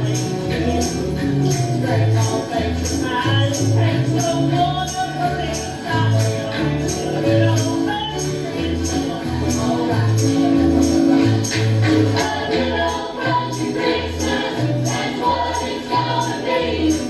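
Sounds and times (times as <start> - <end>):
country christmas song by band: 0.0 - 17.0.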